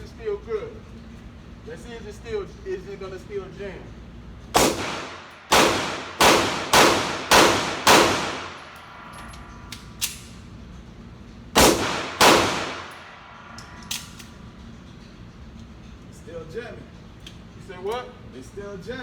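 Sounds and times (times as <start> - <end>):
pistol shots with ringing echo: 4.6 - 10.2, 11.6 - 14.2.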